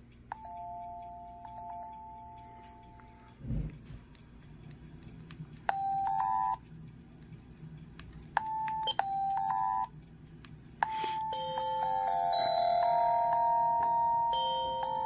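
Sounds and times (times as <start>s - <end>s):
phone ringtone beeping: 0.3s - 3.2s, 5.7s - 6.6s, 8.4s - 10.0s, 10.8s - 15.0s.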